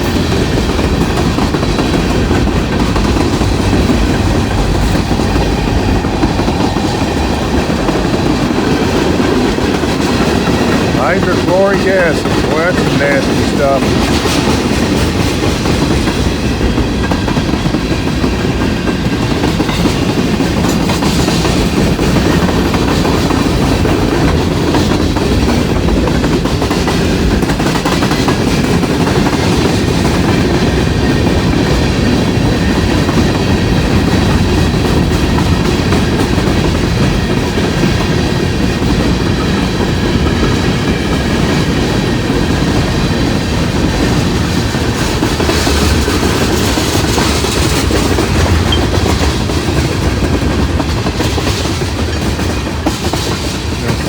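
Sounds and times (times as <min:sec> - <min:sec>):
train wheels rumbling on rails: 0:00.0 - 0:54.0.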